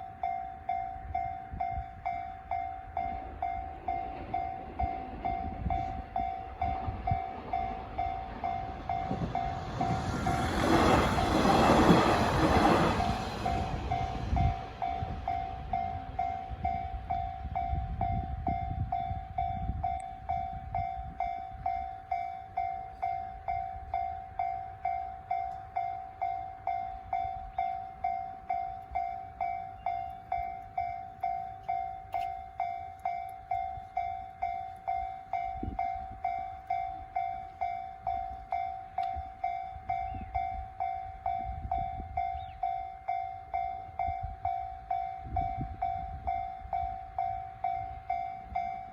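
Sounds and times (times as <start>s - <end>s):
train rumble: 0.0s - 48.9s.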